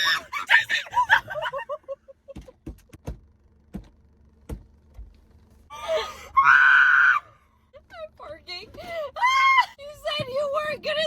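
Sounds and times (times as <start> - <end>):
woman shrieking: 5.7 - 7.3, 9.1 - 9.8.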